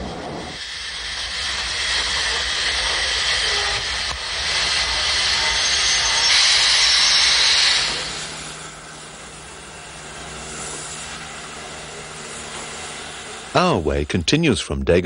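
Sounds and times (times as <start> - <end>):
steam locomotive hissing steam: 0.0 - 14.8.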